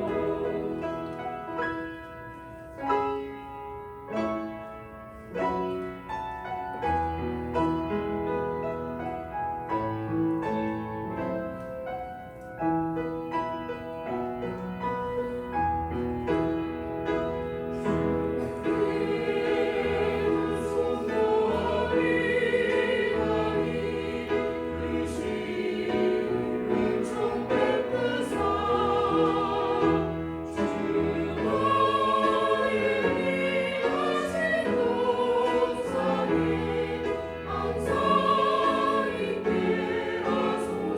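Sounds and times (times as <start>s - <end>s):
choir singing a hymn: 0.0s - 2.1s, 17.4s - 40.9s
piano accompaniment: 0.0s - 40.9s.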